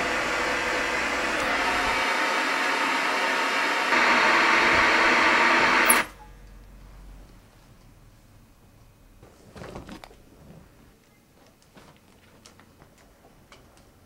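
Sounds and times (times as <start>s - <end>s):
television static hiss: 0.0s - 6.2s.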